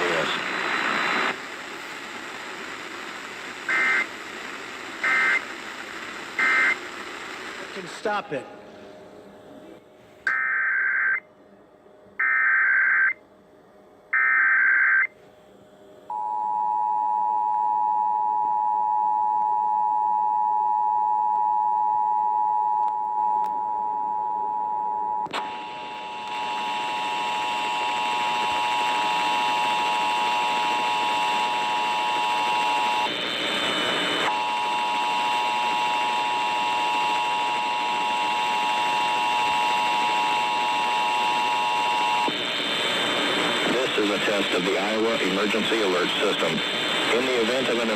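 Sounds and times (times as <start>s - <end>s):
digital header data bursts: 6.4s - 6.8s.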